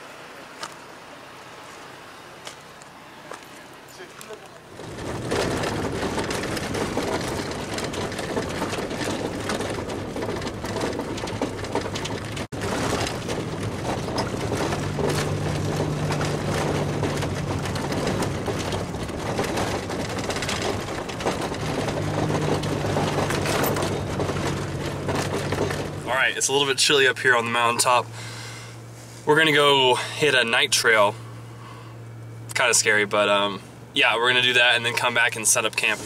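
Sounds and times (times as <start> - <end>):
truck engine hum: 0.0 - 36.0
rattling and crunching: 4.7 - 31.2.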